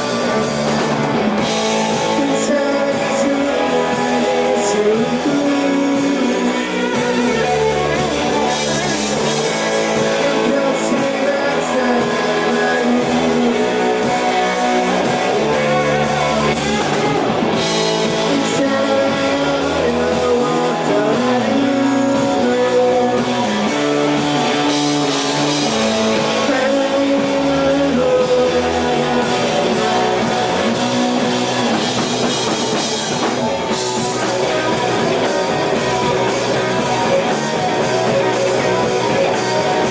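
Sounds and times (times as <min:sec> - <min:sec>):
drum kit: 0:00.0 - 0:39.9
guitars: 0:00.0 - 0:39.9
person singing: 0:00.0 - 0:39.9.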